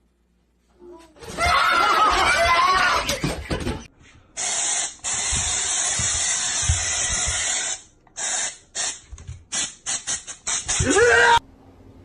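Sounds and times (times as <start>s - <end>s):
hissing spray: 4.4s - 11.0s.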